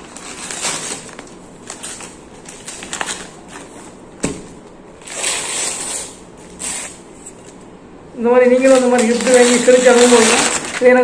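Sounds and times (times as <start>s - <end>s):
gift packaging crinkling: 0.0s - 4.0s, 8.5s - 11.0s.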